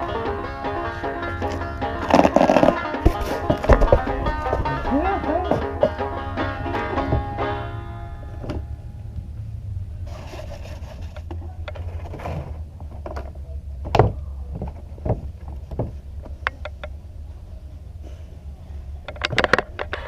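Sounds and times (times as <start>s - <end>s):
low steady hum: 0.0s - 20.0s
knocks taps and scraping: 1.1s - 7.5s, 10.1s - 17.0s.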